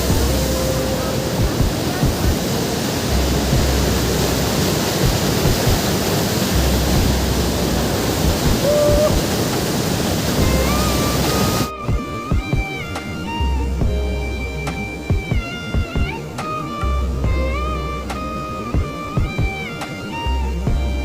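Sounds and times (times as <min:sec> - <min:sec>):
wind rumble on microphone: 0:00.0 - 0:12.7
waterfall rushing: 0:00.0 - 0:21.0.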